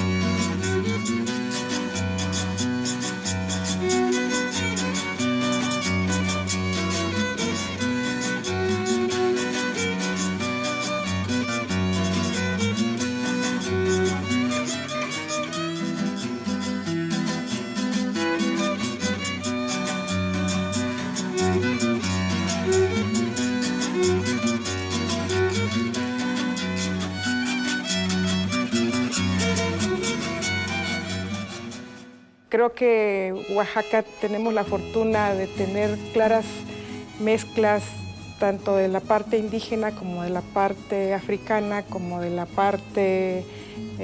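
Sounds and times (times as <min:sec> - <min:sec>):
low string notes: 0:00.0 - 0:17.1, 0:17.7 - 0:32.0
plucked strings: 0:00.0 - 0:32.2, 0:33.4 - 0:44.0
violin melody: 0:00.0 - 0:32.2, 0:33.3 - 0:44.0.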